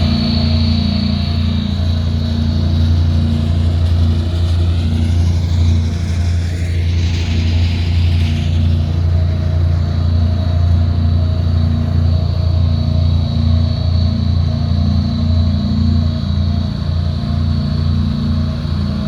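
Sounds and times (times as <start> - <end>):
diesel engine humming: 0.0 - 12.8
high engine whine: 0.0 - 19.0.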